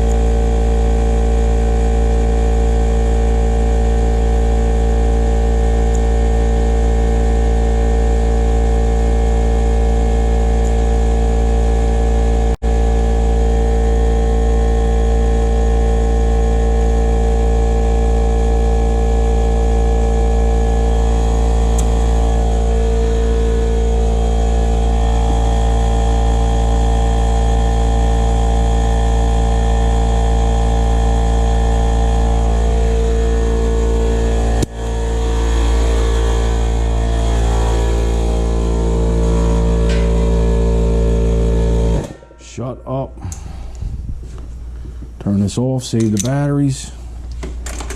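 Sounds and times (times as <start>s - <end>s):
tire inflator motor humming: 0.0s - 42.5s.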